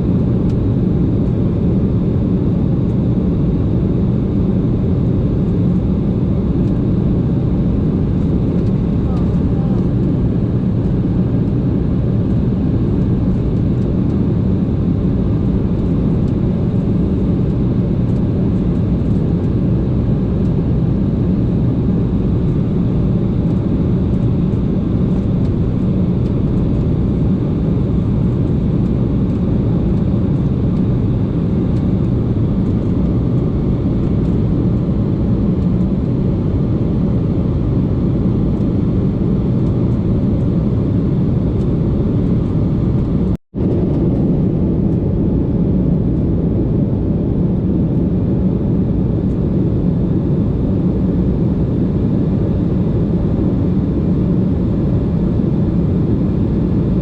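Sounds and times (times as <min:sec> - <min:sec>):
airliner cabin engine rumble: 0:00.0 - 0:57.0.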